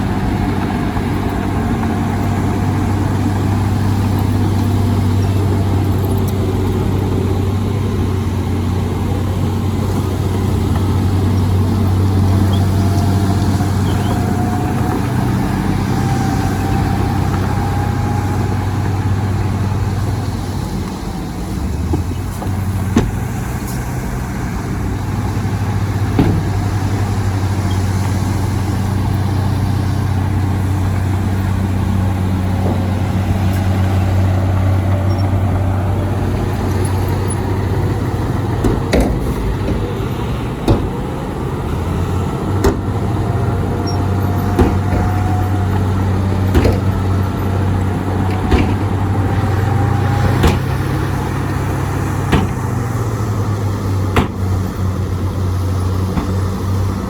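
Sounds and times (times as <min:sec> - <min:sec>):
heavy machinery droning: 0:00.0 - 0:57.0
short knocks: 0:25.5 - 0:28.4, 0:42.5 - 0:55.1.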